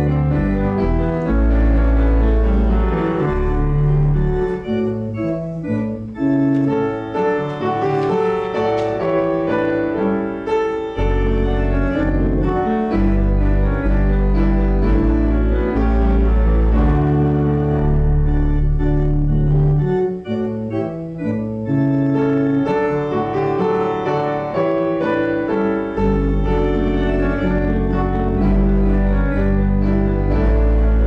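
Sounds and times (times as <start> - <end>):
deep organ bass: 0.0 - 31.0
organ chords: 0.0 - 31.0.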